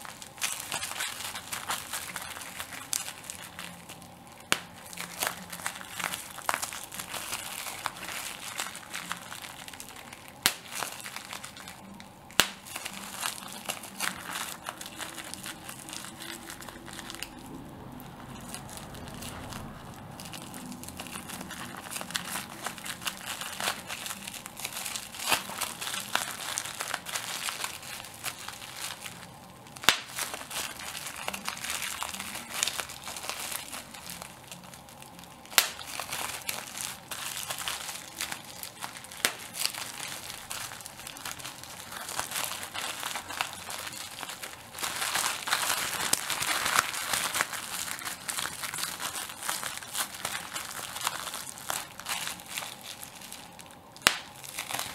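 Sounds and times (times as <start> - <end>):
sharp bubble wrap pops: 0.0 - 17.3, 29.8 - 34.2, 35.4 - 53.4, 54.0 - 54.9
bubble wrap crackling: 0.0 - 54.9.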